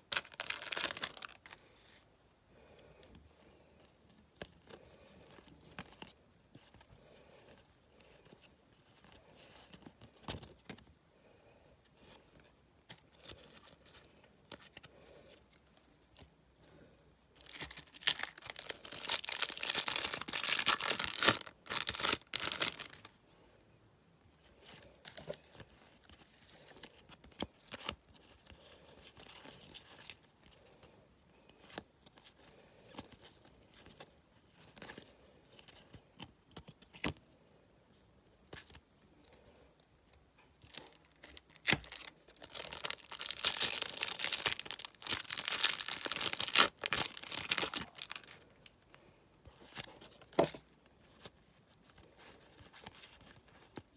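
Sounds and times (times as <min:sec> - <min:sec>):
cards rustling: 0:00.0 - 0:01.8, 0:17.4 - 0:23.2, 0:40.6 - 0:48.4
foil packet tearing: 0:00.1 - 0:01.4, 0:17.4 - 0:23.1, 0:41.6 - 0:48.4.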